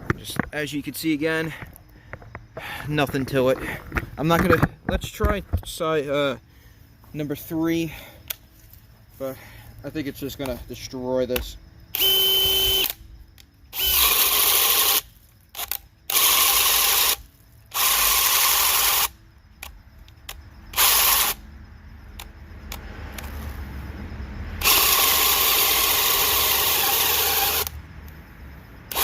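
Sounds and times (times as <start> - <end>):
cordless drill boring into wood: 12.0 - 13.0, 13.8 - 19.1, 20.8 - 21.4, 24.6 - 27.7.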